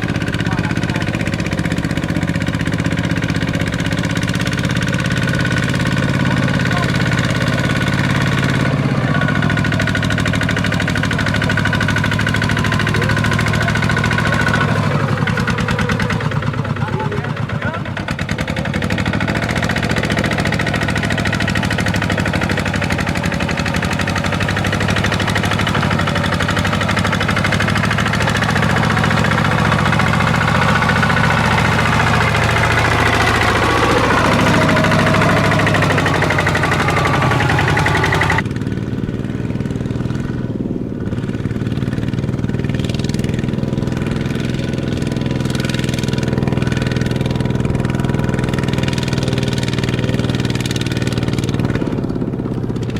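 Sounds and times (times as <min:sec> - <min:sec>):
diesel engine under load: 0:00.0 - 0:52.9.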